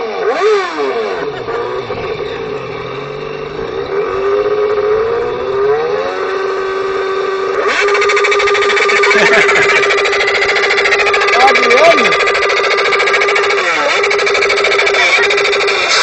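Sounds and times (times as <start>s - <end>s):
man imitating motorcycle engine: 0.3s - 16.0s
buzzy rattle: 7.7s - 16.0s.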